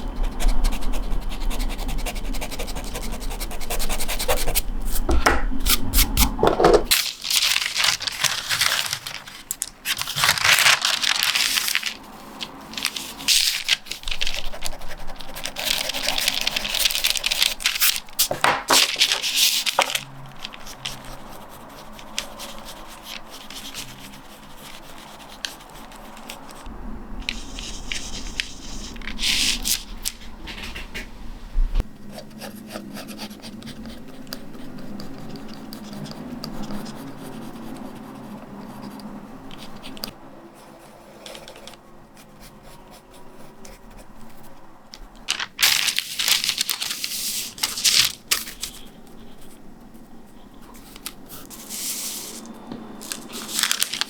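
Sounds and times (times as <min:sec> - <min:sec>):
pencil sketching on paper: 0:00.2 - 0:05.2
art tools scratching paper: 0:00.2 - 0:06.3, 0:06.9 - 0:31.0
paper rustles and scrapes: 0:04.3 - 0:31.2, 0:45.1 - 0:49.6, 0:50.3 - 0:54.0.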